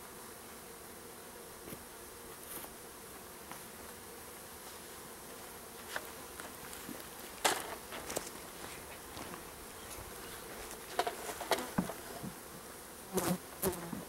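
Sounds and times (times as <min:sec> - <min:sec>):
honey bees buzzing: 0:00.0 - 0:14.0
hive parts clicking and knocking: 0:10.8 - 0:12.4.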